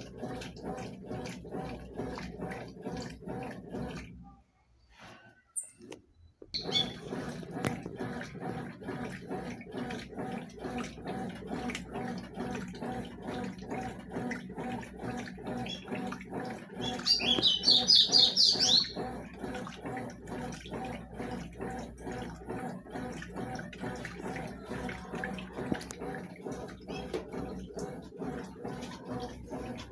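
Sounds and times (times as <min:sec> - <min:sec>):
washing machine churning water: 0:00.0 - 0:29.9
bird chirping: 0:06.6 - 0:07.0, 0:16.8 - 0:19.0.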